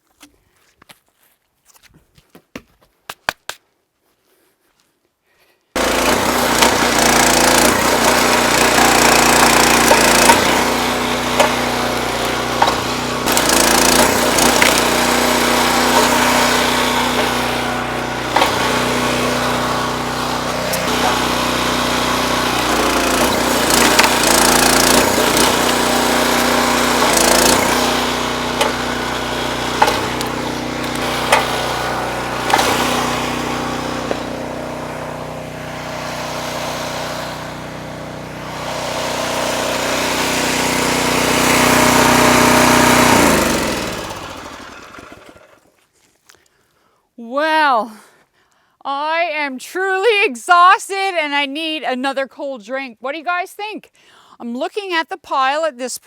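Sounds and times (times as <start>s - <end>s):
wood splitter engine running: 5.8s - 45.7s
logs cracking as split: 13.8s - 15.2s.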